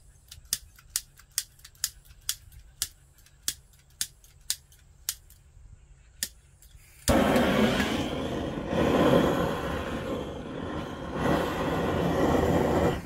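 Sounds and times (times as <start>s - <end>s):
piezo igniter clicking: 0.2s - 5.5s.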